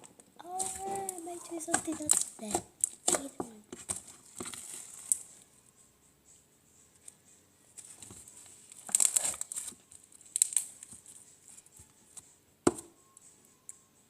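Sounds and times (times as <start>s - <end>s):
crinkling handling noise: 0.0s - 5.5s, 7.0s - 12.2s.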